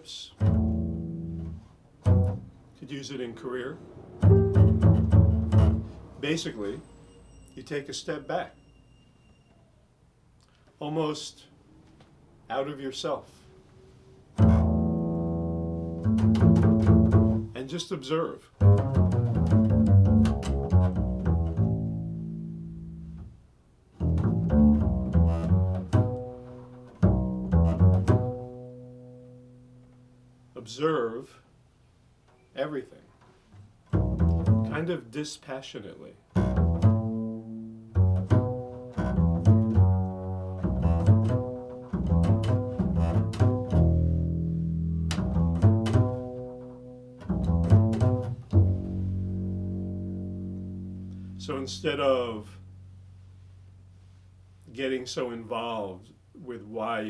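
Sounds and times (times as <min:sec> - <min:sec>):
plucked low stringed instrument: 0:00.4 - 0:02.6, 0:04.2 - 0:06.2, 0:14.4 - 0:17.6, 0:18.6 - 0:23.4, 0:24.0 - 0:30.2, 0:33.9 - 0:34.8, 0:36.4 - 0:54.0.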